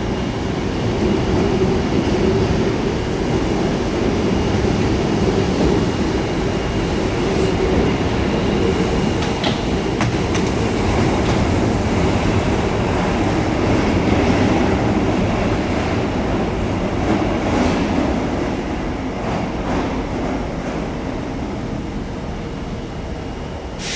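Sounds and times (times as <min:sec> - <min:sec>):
subway train rumbling: 0:00.0 - 0:23.9
wheels clicking over track: 0:09.2 - 0:11.8.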